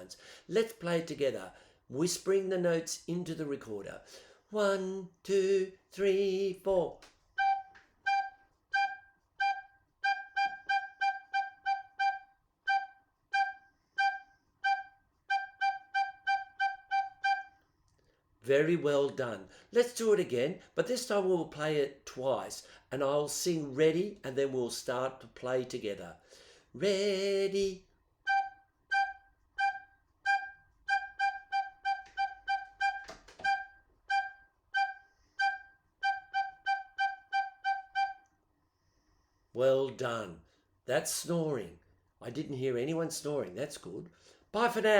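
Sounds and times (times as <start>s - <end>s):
recorder playing short notes: 7.4s - 17.6s, 28.2s - 38.3s.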